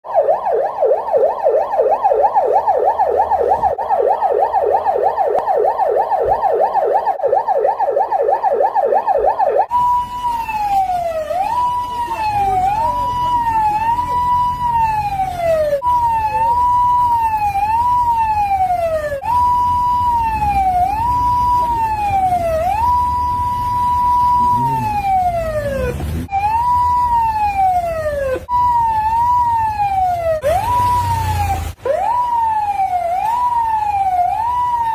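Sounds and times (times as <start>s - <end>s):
police car siren: 0.0s - 34.9s
vehicle low rumble: 0.1s - 34.9s.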